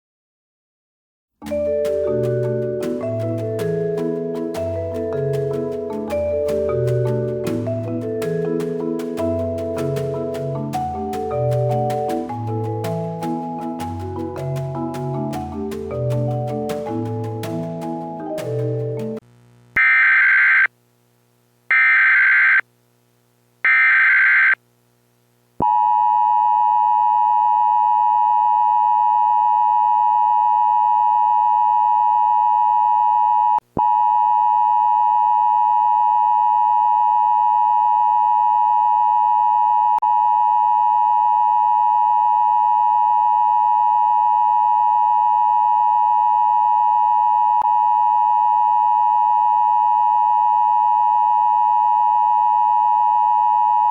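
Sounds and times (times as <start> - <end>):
steady warning alarm tone: 23.7 - 24.6.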